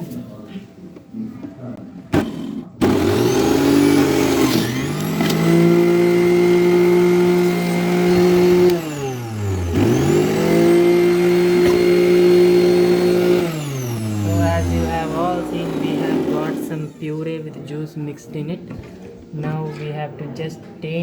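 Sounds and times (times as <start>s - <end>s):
mixer grinder motor whining: 2.1s - 17.4s.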